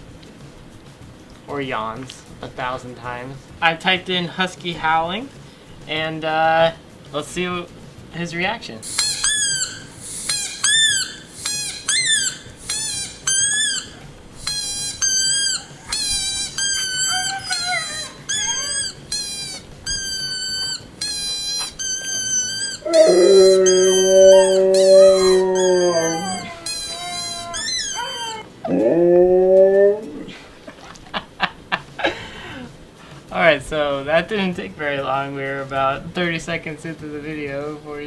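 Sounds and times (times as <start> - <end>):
recorded dog howling through speaker: 13.3 - 30.4
dog howling deeply: 16.4 - 18.9, 22.1 - 30.4.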